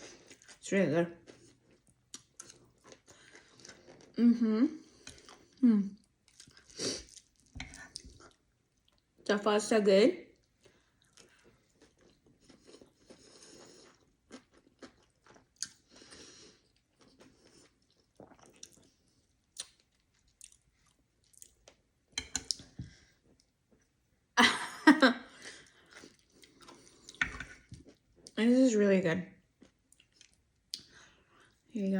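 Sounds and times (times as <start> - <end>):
chewing and biting food: 1.2 - 4.2, 10.4 - 21.8.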